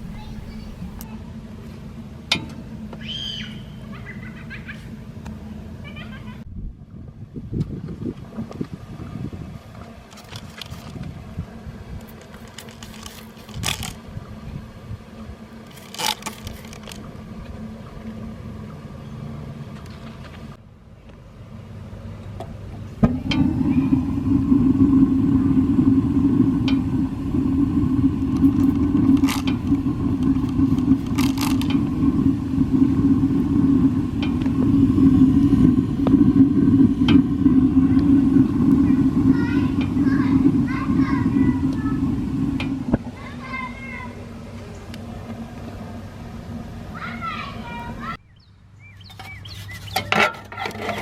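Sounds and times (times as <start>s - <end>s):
low rumble: 0.0s - 1.0s, 22.9s - 43.2s
gas burner whoosh and roar: 0.0s - 2.8s, 21.4s - 48.1s.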